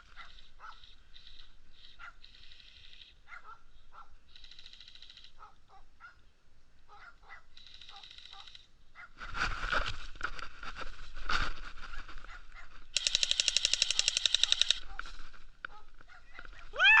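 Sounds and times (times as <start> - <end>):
rustling: 9.2 - 17.0
airsoft pistol full-auto burst: 13.0 - 14.8
clicks: 13.0 - 15.8.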